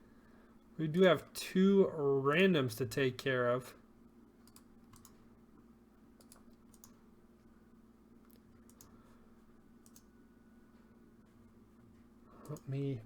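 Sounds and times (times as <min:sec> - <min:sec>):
low steady hum: 0:00.0 - 0:13.0
keyboard typing: 0:04.5 - 0:05.2, 0:06.2 - 0:07.0, 0:09.8 - 0:10.1.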